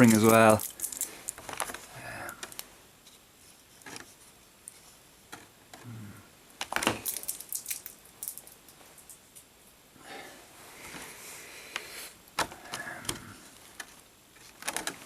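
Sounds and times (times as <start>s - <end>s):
packaging clicks and crinkles: 0.0s - 2.7s, 6.6s - 9.2s.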